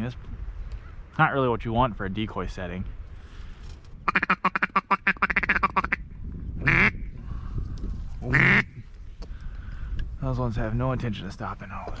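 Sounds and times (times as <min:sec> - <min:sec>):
duck call quacks: 0:04.1 - 0:06.0, 0:06.6 - 0:07.0, 0:08.3 - 0:08.8.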